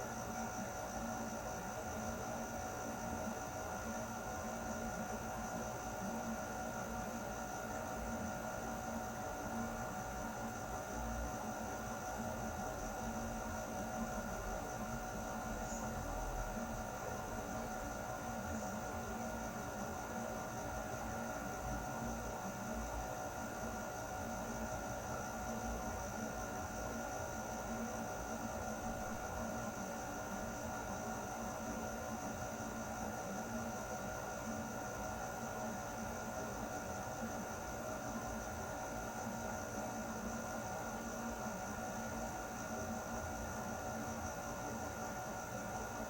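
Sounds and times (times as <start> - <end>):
air conditioner running: 0.0 - 46.0.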